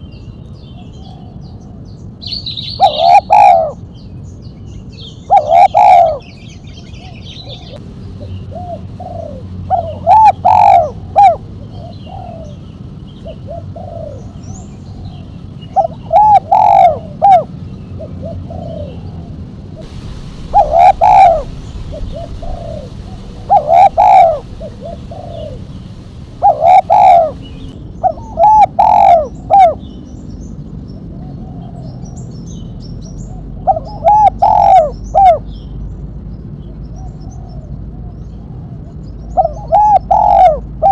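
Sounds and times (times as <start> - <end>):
dove cooing: 2.8 - 3.8, 5.3 - 6.2, 8.5 - 12.6, 15.8 - 19.0, 19.9 - 27.4, 28.0 - 29.8, 33.7 - 35.4, 39.4 - 40.9.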